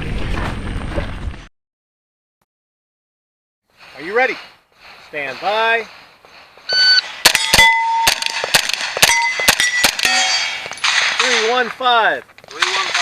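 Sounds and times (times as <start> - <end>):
shot timer beep: 6.7 - 8.4
steel targets clanging: 6.7 - 11.8, 12.5 - 13.0
rapid gunshots: 7.1 - 10.2, 12.6 - 13.0.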